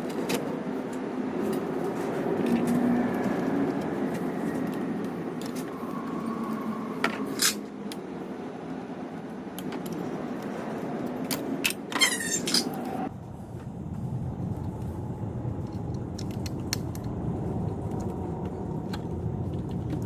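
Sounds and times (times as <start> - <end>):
steady low hum: 13.0 - 20.0.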